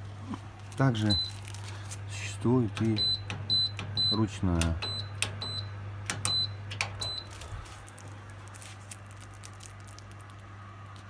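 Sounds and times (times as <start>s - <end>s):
control panel beeps: 1.1s - 1.4s, 2.9s - 7.3s.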